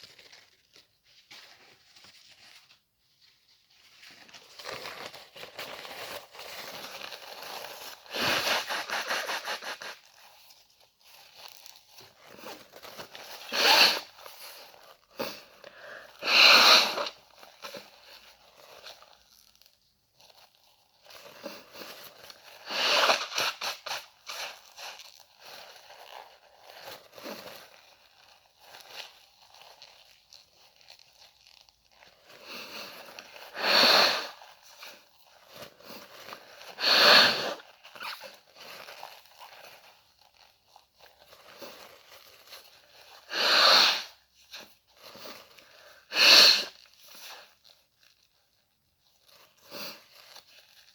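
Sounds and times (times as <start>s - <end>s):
tissue rustling: 0.0s - 50.9s
person blowing nose: 8.0s - 10.1s, 13.3s - 17.2s, 22.6s - 24.5s, 32.4s - 34.9s, 35.8s - 38.3s, 43.1s - 44.3s, 45.2s - 47.6s, 49.7s - 50.1s.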